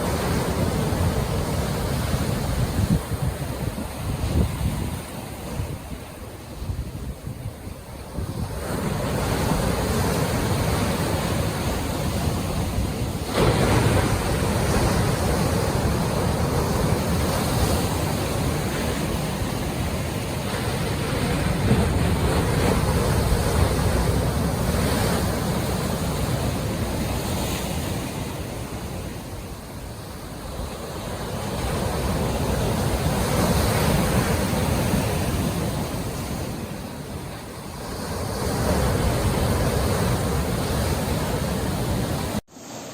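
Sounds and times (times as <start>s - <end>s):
ocean waves breaking on shore: 0.0s - 42.9s.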